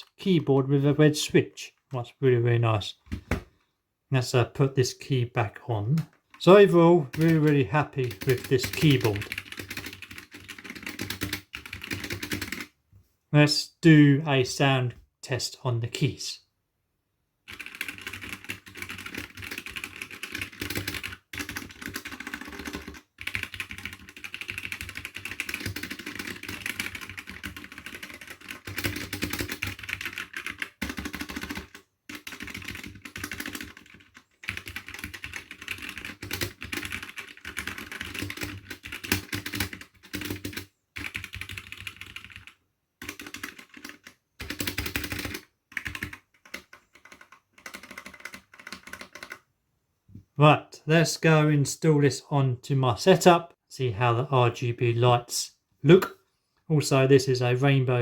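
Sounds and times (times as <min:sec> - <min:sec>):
mechanical keyboard typing: 0:06.0 - 0:12.7, 0:17.5 - 0:49.4.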